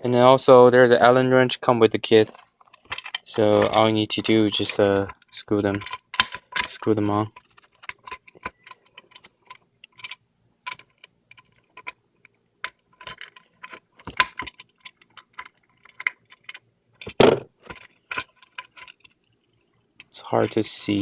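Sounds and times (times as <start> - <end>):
allen key clicking on metal screws: 2.6 - 3.9, 4.5 - 19.2
metallic knock: 17.0 - 17.5.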